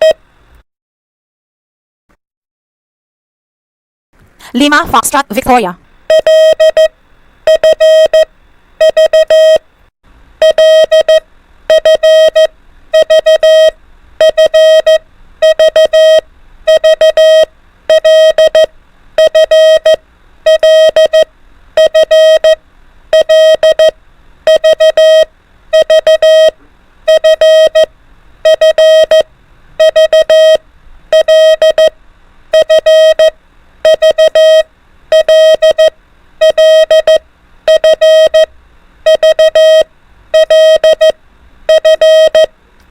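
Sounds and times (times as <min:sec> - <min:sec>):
morse code beeps: 0:00.0 - 0:00.2, 0:06.1 - 0:06.9, 0:07.5 - 0:09.6, 0:10.4 - 0:31.9, 0:32.5 - 0:38.5, 0:39.1 - 0:42.5.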